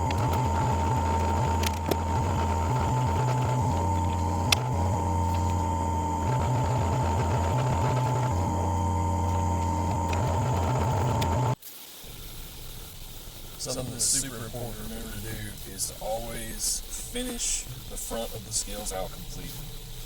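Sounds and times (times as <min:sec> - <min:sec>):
drill press running: 0:00.0 - 0:11.6
sharp clicks: 0:00.0 - 0:11.6.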